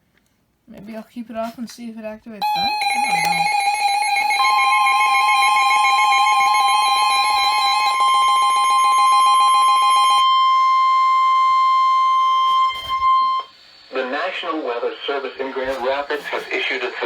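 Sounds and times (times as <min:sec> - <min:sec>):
rapid warbling alarm beep: 0:02.4 - 0:13.5
steady warning alarm tone: 0:02.4 - 0:14.2.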